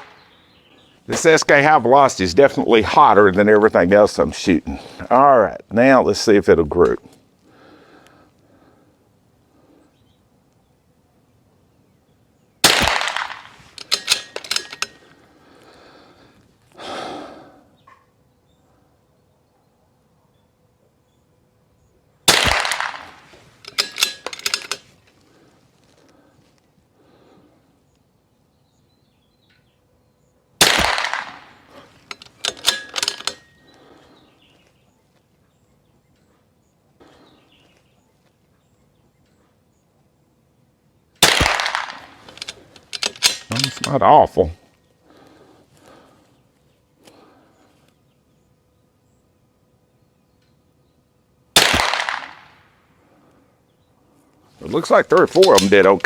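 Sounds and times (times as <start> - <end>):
rifle shot with ringing tail: 12.6 - 14.8, 22.3 - 23.2, 30.6 - 31.7, 41.2 - 42.2, 51.6 - 52.6
rifle bolt clicking: 22.4 - 24.8, 32.0 - 33.4, 41.3 - 43.9.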